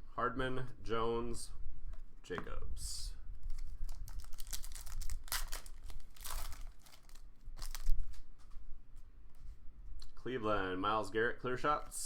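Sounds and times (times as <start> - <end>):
card pack wrapper crinkling: 3.4 - 8.3.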